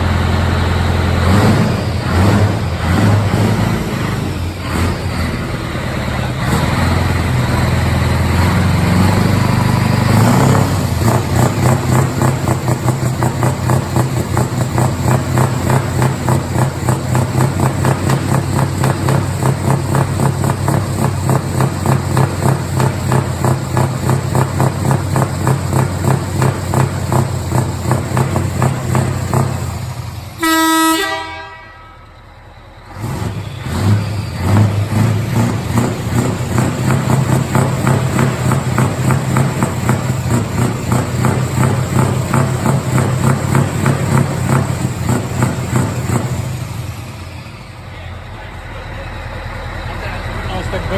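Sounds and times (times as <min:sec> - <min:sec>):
truck engine running: 0:00.0 - 0:50.9
horn toot: 0:30.4 - 0:32.2.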